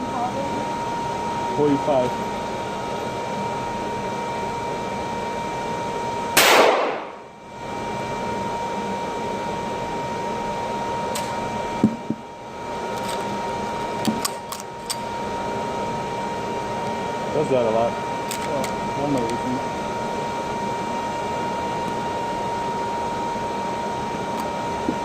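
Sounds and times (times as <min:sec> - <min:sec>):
ventilation hum: 0:00.0 - 0:25.0
handgun shot: 0:06.4 - 0:07.2.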